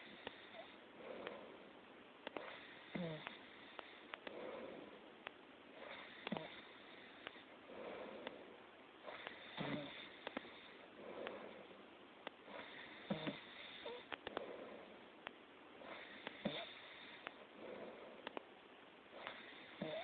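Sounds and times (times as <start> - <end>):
soft breathing: 0.0 - 20.0
person snoring faintly: 2.4 - 5.0, 5.8 - 8.4, 9.0 - 11.8, 12.4 - 15.0, 15.8 - 18.4, 19.1 - 20.0.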